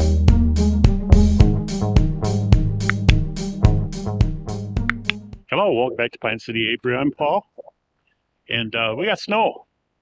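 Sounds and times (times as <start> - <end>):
intro music with drum beat: 0.0 - 5.4.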